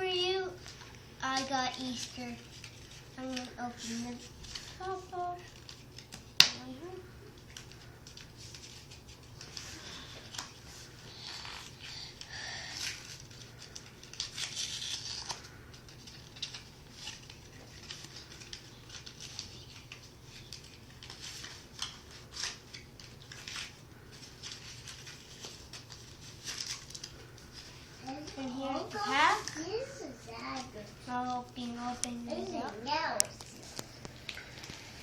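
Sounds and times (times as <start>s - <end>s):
card pack packaging being opened: 7.5s - 27.7s.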